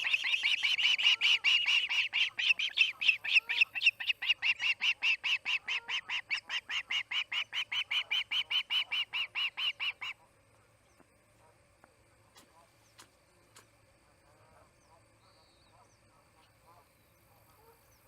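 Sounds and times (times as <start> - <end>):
osprey screaming calls: 0.0 - 10.2.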